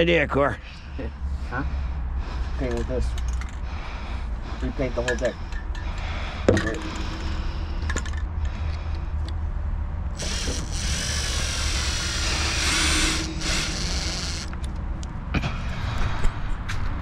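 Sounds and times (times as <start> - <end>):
low rumble: 6.1 - 16.6
cordless drill whirring: 10.2 - 14.7.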